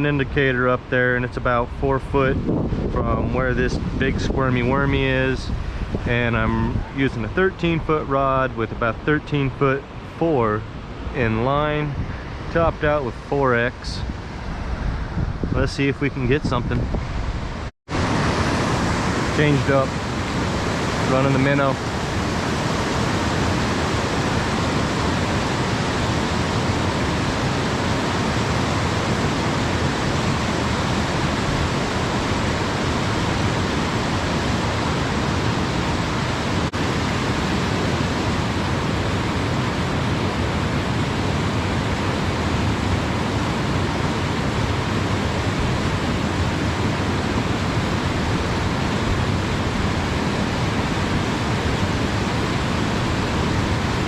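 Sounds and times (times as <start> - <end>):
river water rushing: 17.4 - 54.0.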